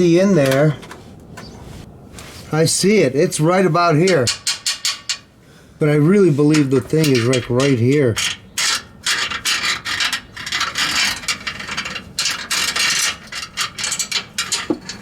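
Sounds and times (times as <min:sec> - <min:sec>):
magnet tool scraping steel frame: 0:06.0 - 0:15.0.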